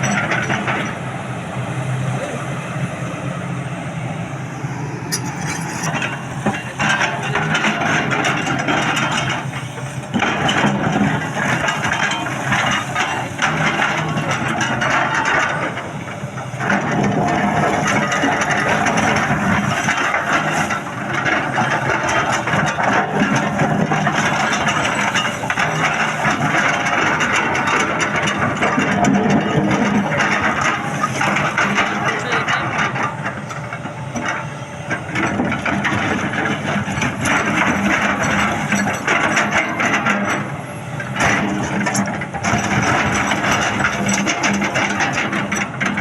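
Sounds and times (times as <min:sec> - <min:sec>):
excavator engine running: 0:00.0 - 0:46.0
rock and metal scraping: 0:05.1 - 0:46.0.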